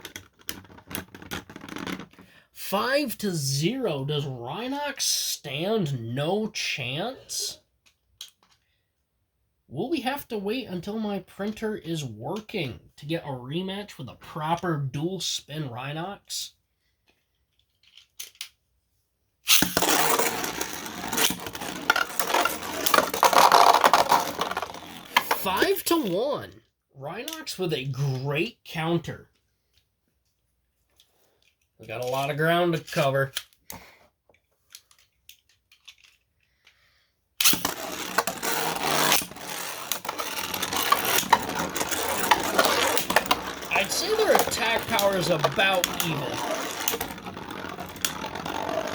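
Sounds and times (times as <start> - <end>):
spinning tops clashing: 19.5 - 25.6, 37.4 - 48.9
spinning tops whirring: 19.5 - 25.7, 37.4 - 48.9.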